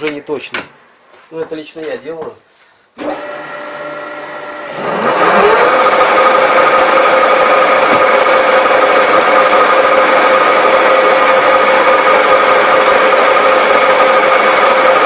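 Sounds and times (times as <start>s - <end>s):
lathe running: 3.0s - 15.0s.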